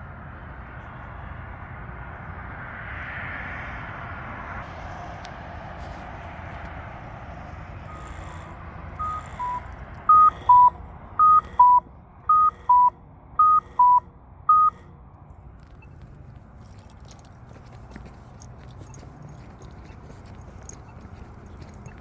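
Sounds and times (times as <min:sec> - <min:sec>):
traffic noise: 0:00.0 - 0:22.0
pedestrian signal chirps: 0:07.9 - 0:15.0.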